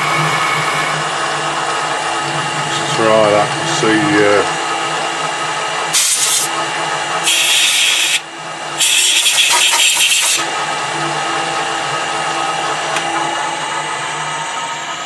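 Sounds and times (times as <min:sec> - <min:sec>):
metal lathe humming: 0:00.0 - 0:15.0
harsh high-pitched cutting noise: 0:08.8 - 0:10.5.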